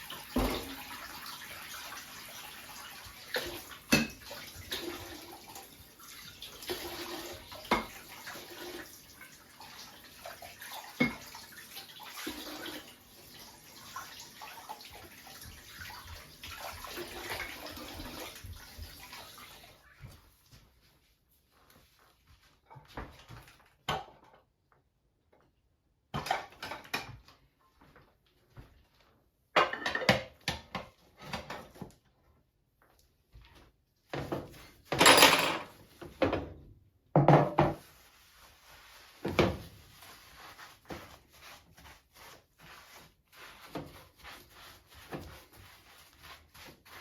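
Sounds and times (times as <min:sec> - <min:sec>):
water running from a tap: 0:00.0 - 0:19.9, 0:37.8 - 0:47.0.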